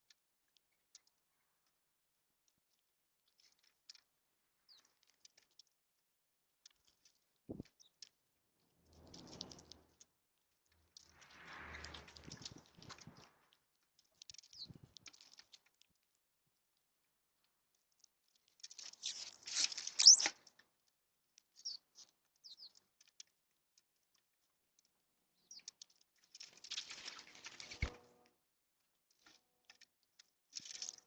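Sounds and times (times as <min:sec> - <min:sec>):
small birds chirping: 0:04.5 - 0:05.7, 0:06.7 - 0:10.0, 0:14.0 - 0:15.7, 0:17.9 - 0:20.6, 0:21.4 - 0:23.4, 0:24.8 - 0:27.9
rustling pattering noise: 0:10.7 - 0:15.8.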